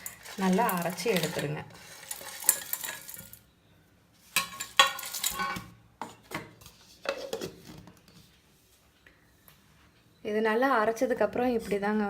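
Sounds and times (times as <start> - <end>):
dried spices clattering into steel jar: 0.0 - 3.4, 4.4 - 5.6
metal spoon clattering: 0.0 - 3.4, 4.4 - 5.6.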